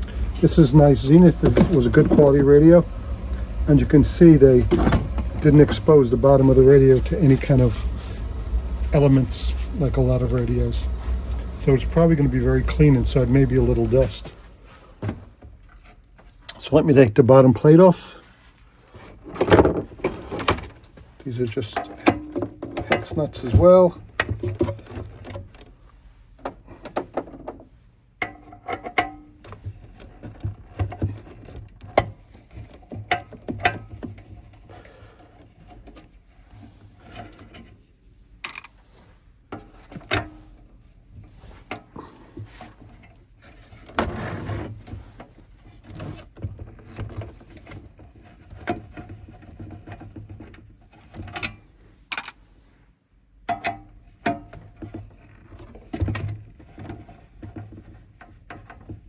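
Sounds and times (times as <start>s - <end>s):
small metal clicks and knocks: 38.4s - 38.8s, 49.8s - 52.4s.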